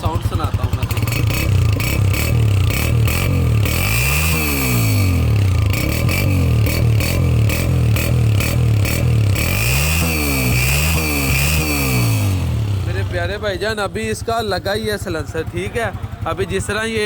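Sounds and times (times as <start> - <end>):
motorcycle engine idling and revving: 0.0 - 17.0.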